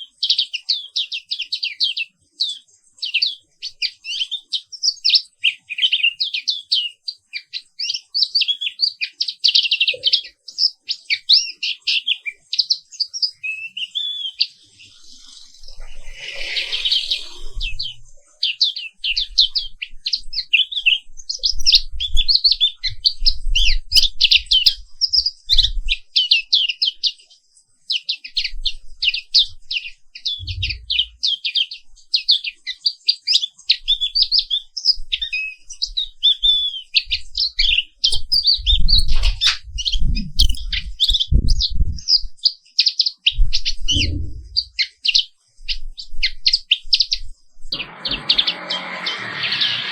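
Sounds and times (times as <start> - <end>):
bird singing rapid chirps and trills: 0.0 - 47.2
low thumps: 30.4 - 31.1, 43.4 - 44.7.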